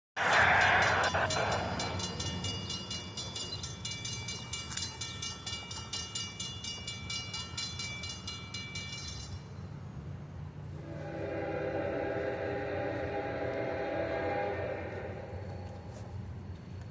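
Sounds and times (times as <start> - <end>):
crossing bell ringing: 0.2 - 9.8
freight train rumble: 0.2 - 16.9.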